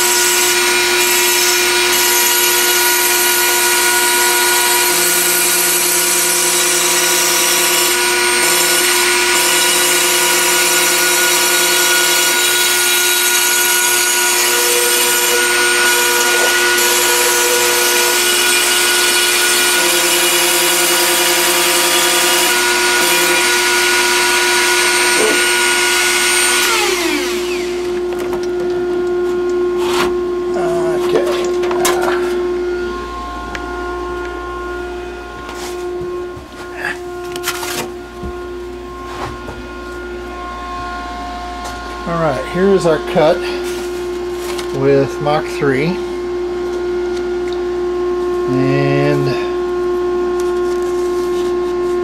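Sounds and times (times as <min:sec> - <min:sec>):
cnc spindle whine: 0:00.0 - 0:52.0
stepper motor tones: 0:00.0 - 0:52.0.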